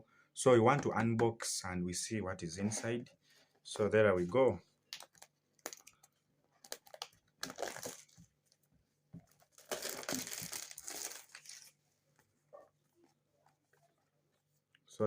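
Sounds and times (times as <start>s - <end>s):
packaging crinkling and tearing: 4.9s - 8.2s, 9.4s - 11.8s
packaging rustle: 9.3s - 11.8s.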